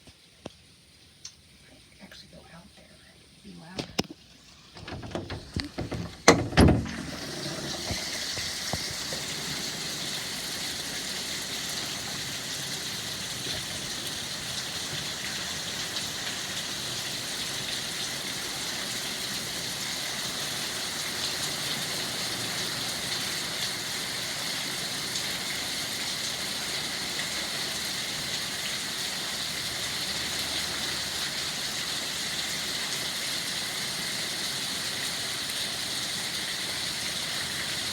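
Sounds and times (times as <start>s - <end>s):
steady rain falling: 0.0s - 37.9s
knocks and clatters: 4.7s - 9.2s.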